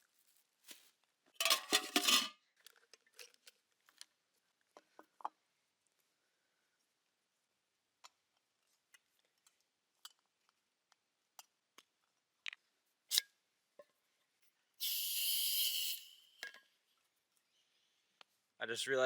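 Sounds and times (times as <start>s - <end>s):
camping gear clicks and knocks: 1.4s - 4.0s
loud hiss: 14.8s - 16.4s.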